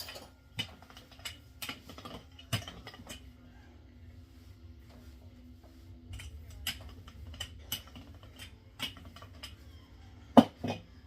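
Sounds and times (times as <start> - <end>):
rolling pin clicking and knocking: 6.2 - 9.6.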